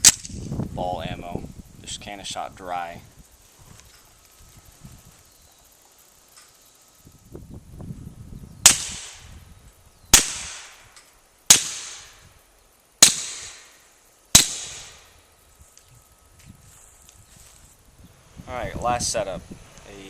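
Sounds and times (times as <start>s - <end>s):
suppressed pistol shots: 8.7s - 9.3s, 10.1s - 10.9s, 11.5s - 12.2s, 13.0s - 13.8s, 14.4s - 15.0s.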